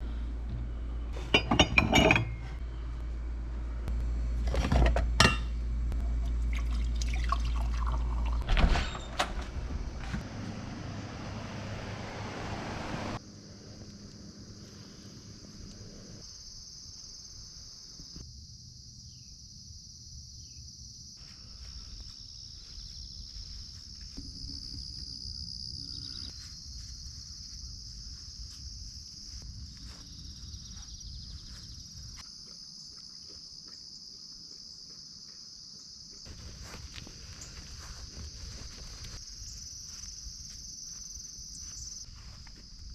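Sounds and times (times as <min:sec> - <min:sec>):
insects chirping: 0:13.2 - 0:42.9.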